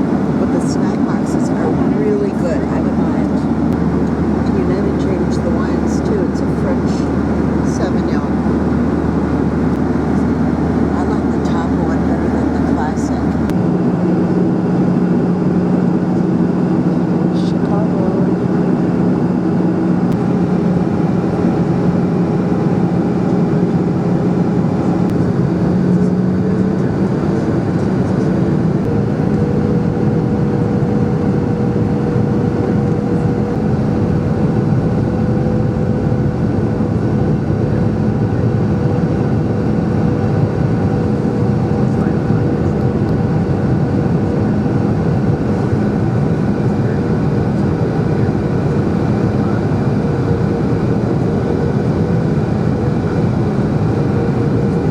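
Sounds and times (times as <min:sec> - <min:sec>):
hums changing pitch: 0:00.0 - 0:13.6
jet engines: 0:00.0 - 0:54.9.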